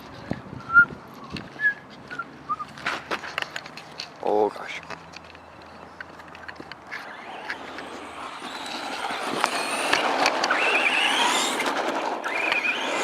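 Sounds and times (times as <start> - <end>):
tyre noise: 0.0 - 13.0
rc motor whine: 6.8 - 13.0.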